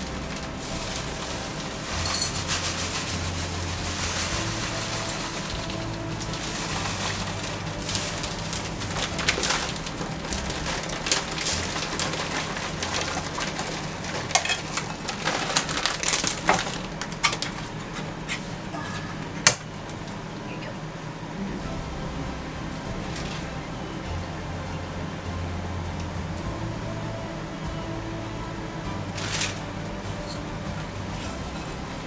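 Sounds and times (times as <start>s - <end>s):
rustling and scraping of utensils: 0.0s - 19.5s.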